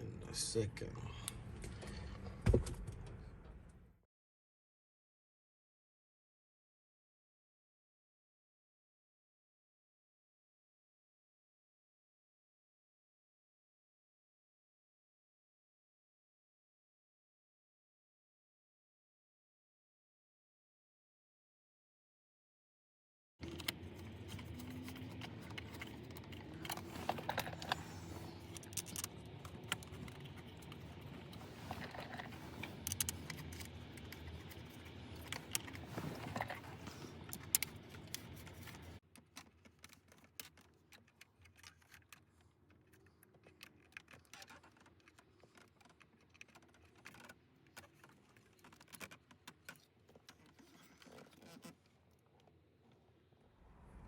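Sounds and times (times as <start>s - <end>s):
small plastic parts clicking: 23.4s - 51.8s.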